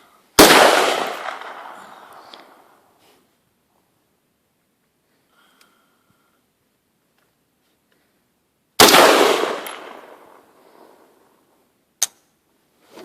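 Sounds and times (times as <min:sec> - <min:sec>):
rifle shot echoing: 0:00.4 - 0:02.7, 0:08.8 - 0:10.5.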